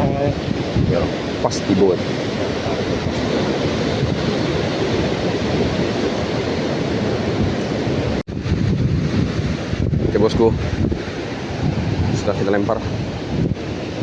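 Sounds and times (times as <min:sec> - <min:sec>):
large waves breaking: 0:00.0 - 0:14.0
wind buffeting microphone: 0:00.0 - 0:14.0.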